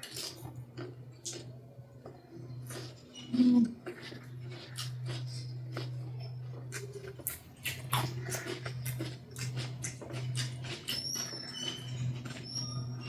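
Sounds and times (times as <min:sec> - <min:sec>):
wet chewing: 0:02.6 - 0:12.9.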